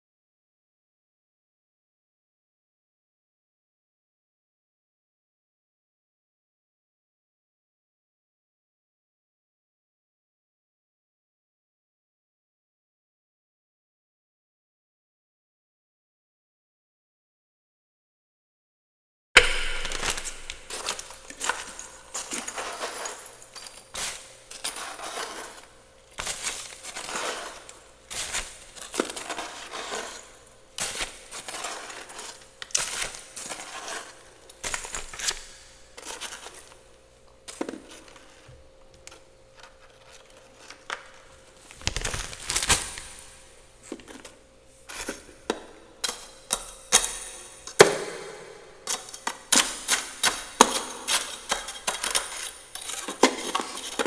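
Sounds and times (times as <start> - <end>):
ice chunks clinking: 19.4 - 35.4
ice scraping in freezer: 20.5 - 36.8, 48.9 - 54.0.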